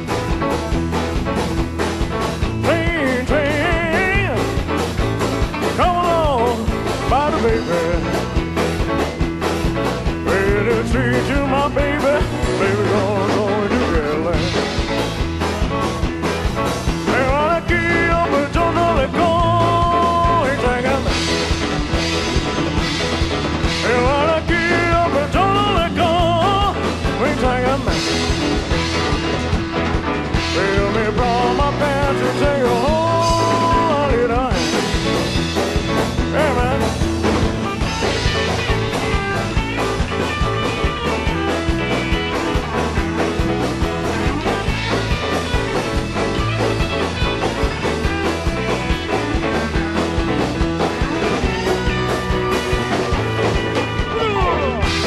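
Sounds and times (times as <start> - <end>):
rock band playing instrumental: 0.0 - 55.0
lead guitar bending notes: 11.8 - 55.0.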